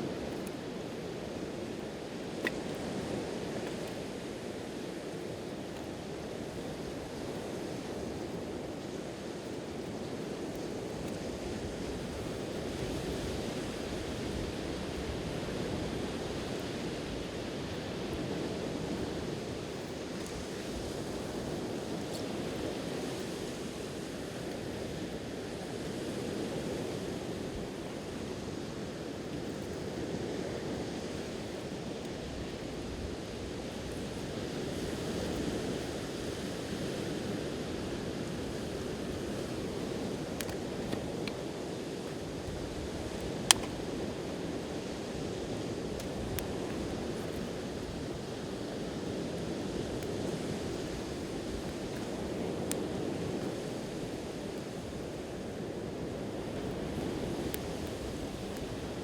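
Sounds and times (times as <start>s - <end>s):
sea waves washing onto shore: 0.0s - 59.0s
campfire crackle: 0.1s - 59.0s.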